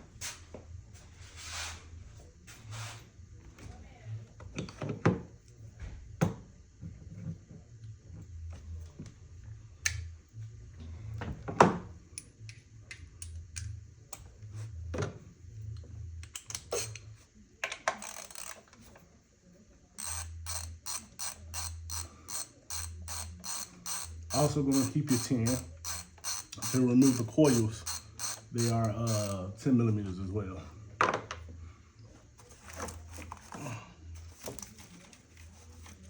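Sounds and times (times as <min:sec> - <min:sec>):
ratchet wrench clicking rapidly: 0:16.5 - 0:17.0, 0:18.0 - 0:18.6, 0:20.0 - 0:29.4
hand tools clicking on metal: 0:20.0 - 0:29.4.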